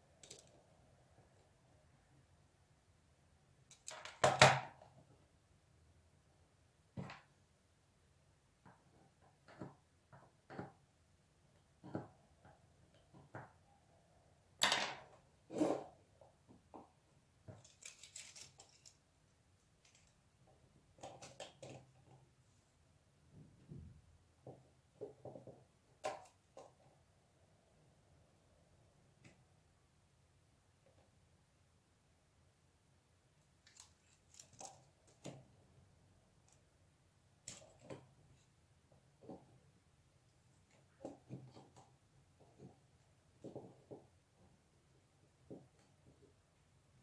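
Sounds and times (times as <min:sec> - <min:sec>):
faint clicks and rustles: 0:16.4 - 0:22.2, 0:33.4 - 0:35.5.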